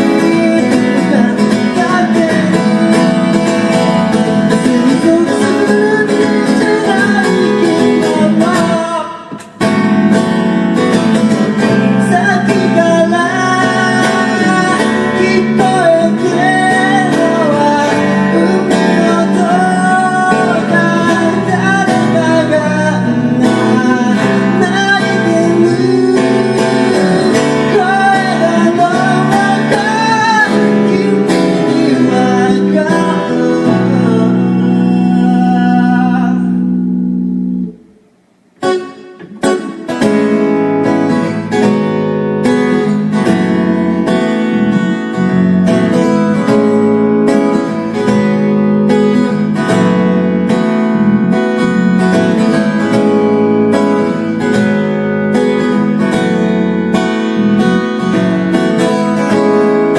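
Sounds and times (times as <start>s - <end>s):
person singing: 0.0s - 9.9s, 10.8s - 37.0s
acoustic guitar: 0.0s - 59.9s.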